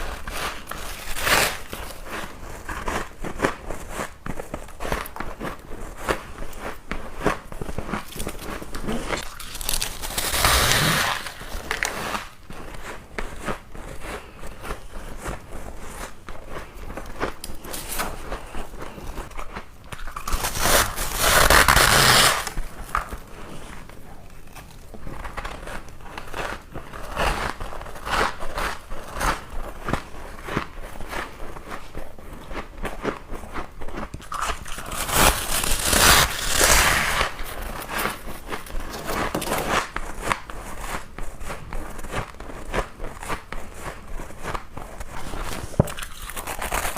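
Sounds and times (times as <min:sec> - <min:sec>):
ice being chewed: 0:07.3 - 0:10.5, 0:16.1 - 0:20.6, 0:31.2 - 0:35.8, 0:45.1 - 0:46.9.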